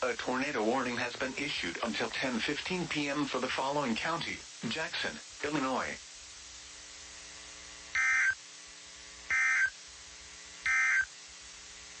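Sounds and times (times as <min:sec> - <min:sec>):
faint steady hum: 0:00.0 - 0:12.0
electronic data screeches: 0:08.0 - 0:08.4, 0:09.3 - 0:09.8, 0:10.7 - 0:11.1.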